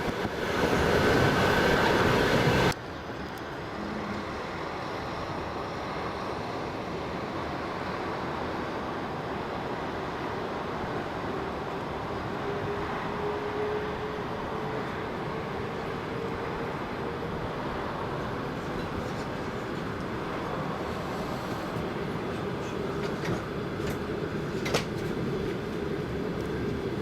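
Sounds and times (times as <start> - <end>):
train running on rails: 0.0 - 27.0.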